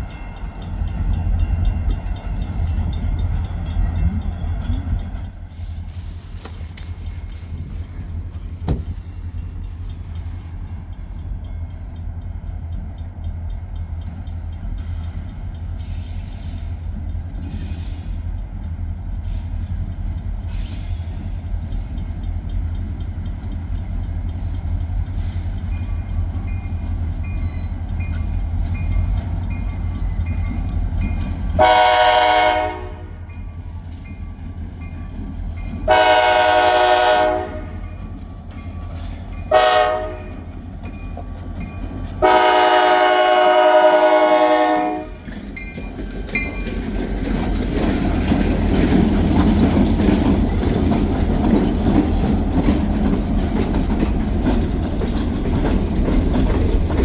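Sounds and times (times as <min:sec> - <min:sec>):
freight train rumbling: 0:00.0 - 0:57.0
train horn: 0:31.6 - 0:33.3, 0:35.9 - 0:38.0, 0:39.5 - 0:40.4, 0:42.2 - 0:45.2.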